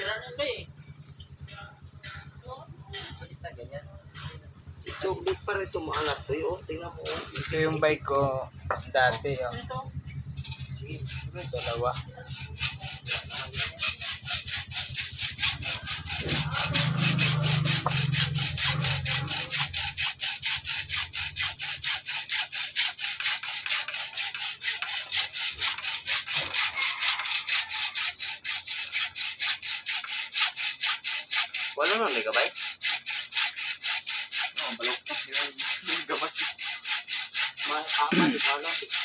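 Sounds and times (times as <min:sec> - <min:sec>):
hacksaw cutting metal: 0:01.9 - 0:03.4, 0:04.2 - 0:09.4, 0:10.1 - 0:39.0.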